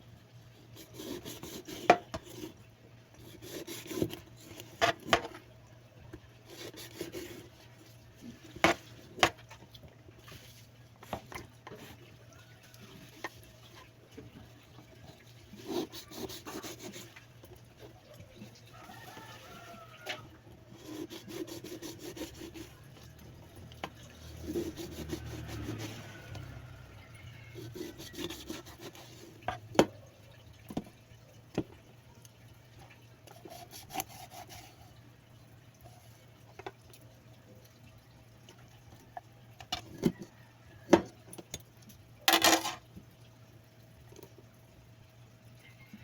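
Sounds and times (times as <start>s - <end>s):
knife scraping fish: 0.8s - 5.4s, 6.5s - 7.6s, 15.5s - 17.2s, 20.1s - 22.8s, 24.2s - 26.6s, 27.5s - 29.7s, 33.3s - 35.0s.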